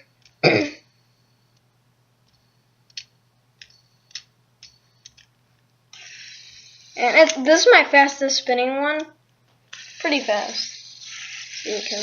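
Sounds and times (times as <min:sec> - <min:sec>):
plastic fidget spinner clicks: 0:07.0 - 0:07.7.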